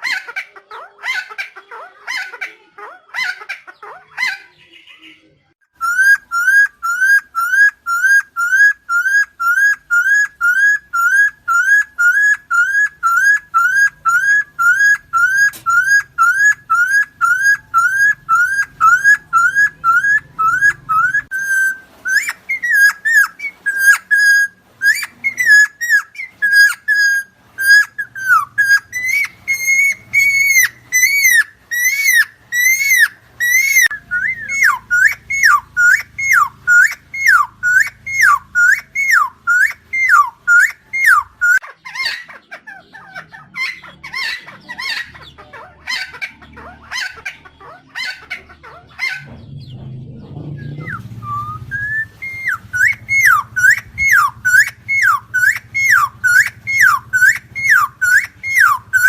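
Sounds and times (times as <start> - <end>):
bird calling repeated notes: 5.8 - 42.2, 50.6 - 59.0.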